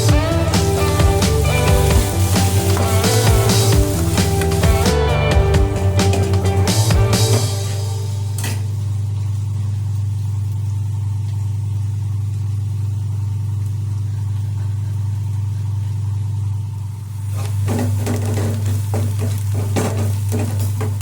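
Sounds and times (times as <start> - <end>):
steady low motor hum: 0.0 - 21.0
utensil scraping in a pan: 0.4 - 4.9, 17.3 - 21.0.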